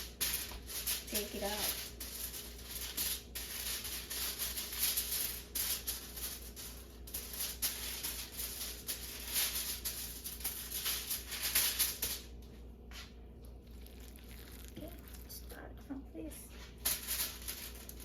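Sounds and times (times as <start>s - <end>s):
aluminum foil rustling: 0.0s - 12.7s, 13.5s - 15.7s, 16.3s - 18.0s.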